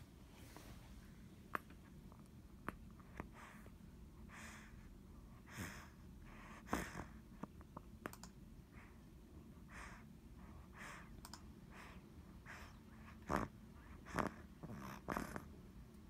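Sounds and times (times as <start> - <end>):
pet snoring softly: 5.4 - 7.2, 9.8 - 15.6
small clicks: 8.1 - 8.4.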